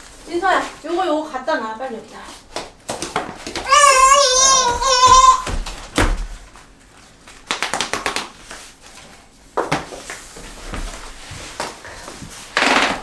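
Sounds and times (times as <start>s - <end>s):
foam mat pieces knocking: 2.5s - 6.7s, 7.3s - 8.8s, 9.6s - 13.0s.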